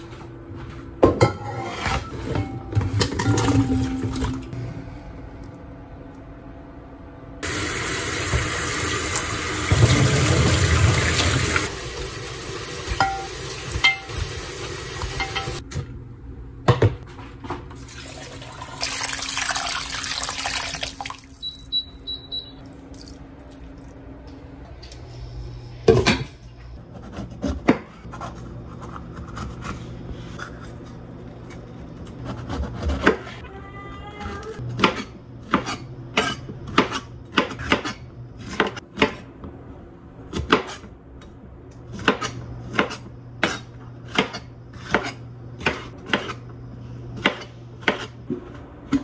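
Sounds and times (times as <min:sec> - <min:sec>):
water running from a tap: 0:07.4 - 0:15.6, 0:17.8 - 0:21.4.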